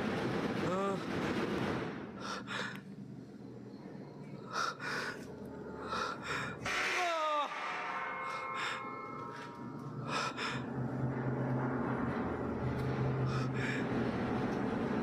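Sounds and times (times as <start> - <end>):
breathy gasps: 2.2 - 2.8.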